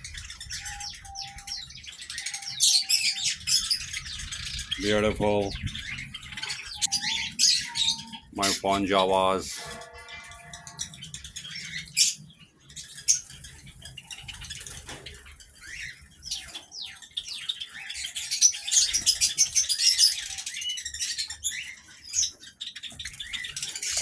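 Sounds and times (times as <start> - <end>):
sparrows chirping: 0.0 - 24.0
wings fluttering: 13.0 - 16.7.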